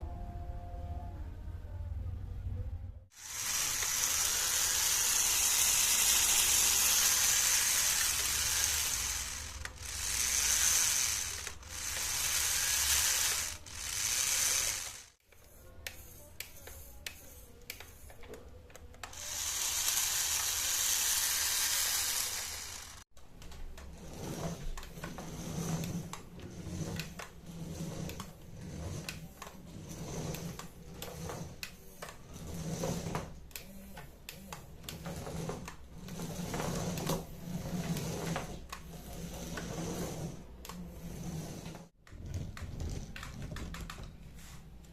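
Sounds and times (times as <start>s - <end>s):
small electric motor whirring: 3.1s - 15.2s, 19.0s - 23.1s.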